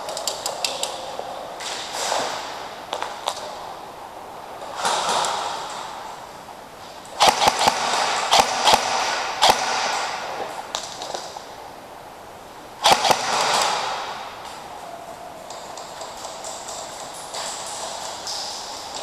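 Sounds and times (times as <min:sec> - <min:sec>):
airsoft gun shots with echo: 0:07.2 - 0:10.3, 0:12.8 - 0:14.3.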